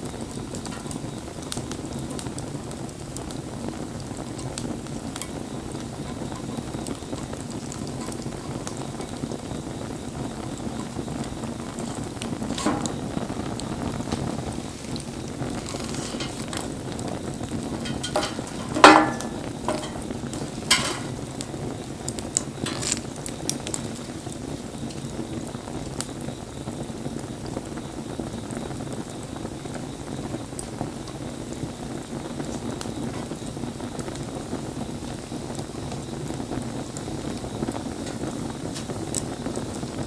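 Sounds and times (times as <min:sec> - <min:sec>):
wood fire crackling and hissing: 0:00.0 - 0:40.0
sharp pops: 0:17.8 - 0:21.2.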